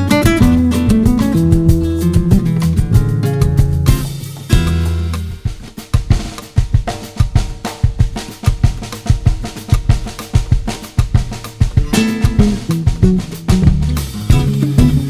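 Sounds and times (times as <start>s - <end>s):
guitar-led music: 0.0s - 5.5s, 11.7s - 15.0s
drum kit groove: 0.0s - 15.0s.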